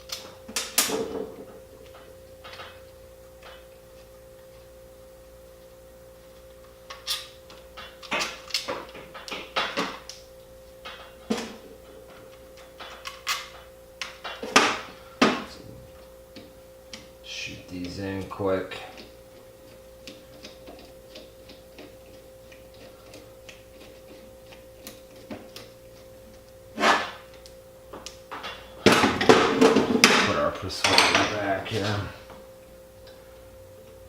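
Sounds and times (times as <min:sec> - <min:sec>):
steady hum: 0:00.0 - 0:34.0.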